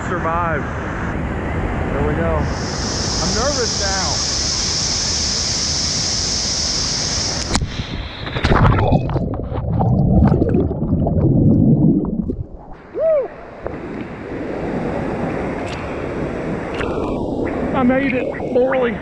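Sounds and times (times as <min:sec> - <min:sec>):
muffled underwater churning: 0:07.6 - 0:19.0.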